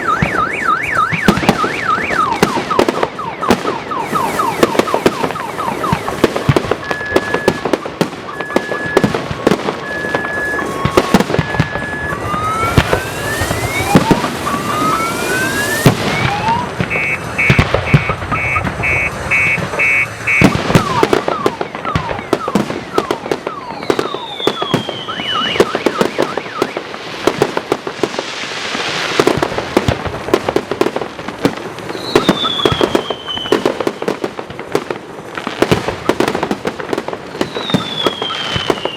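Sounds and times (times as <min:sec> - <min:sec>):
car alarm: 0:00.0 - 0:26.9, 0:32.0 - 0:33.8, 0:37.4 - 0:38.9
descending firework whistles: 0:00.0 - 0:26.9, 0:31.8 - 0:34.1, 0:37.3 - 0:38.9
fireworks bangs and crackles: 0:00.0 - 0:38.9.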